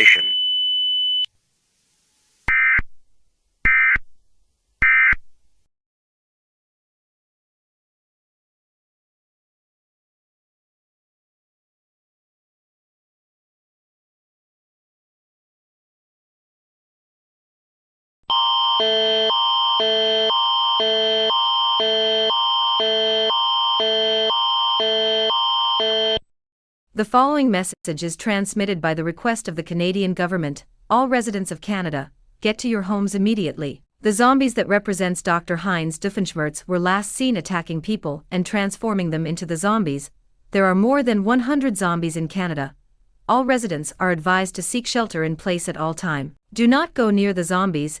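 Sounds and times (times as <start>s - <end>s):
digital data tone bursts: 0.0s - 0.4s
electronic emergency alert tone: 0.0s - 1.3s, 18.3s - 26.2s.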